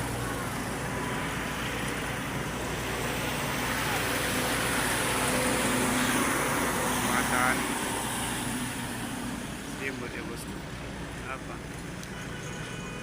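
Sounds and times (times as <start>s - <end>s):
heavy vehicle engine running: 0.0s - 13.0s.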